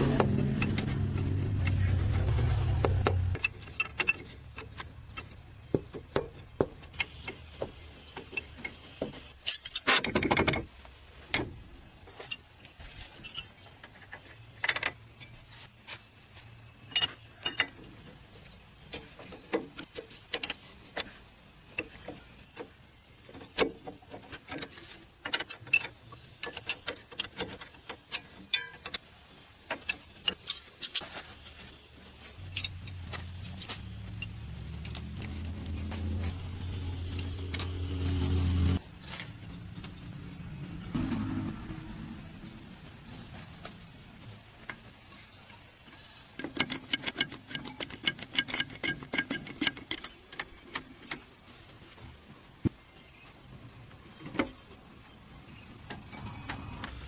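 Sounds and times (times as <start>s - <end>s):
metal tools clinking on metal: 0.0s - 5.4s, 9.3s - 10.0s, 12.2s - 15.4s, 16.8s - 18.0s, 24.3s - 29.0s, 32.4s - 38.8s.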